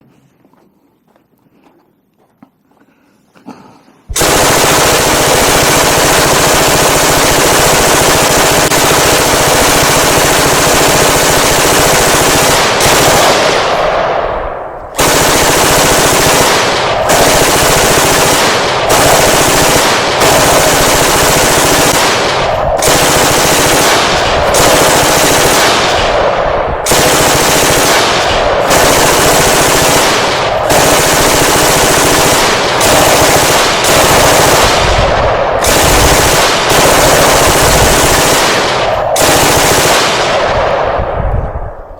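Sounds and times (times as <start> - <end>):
machine-gun fire: 4.1 - 41.2.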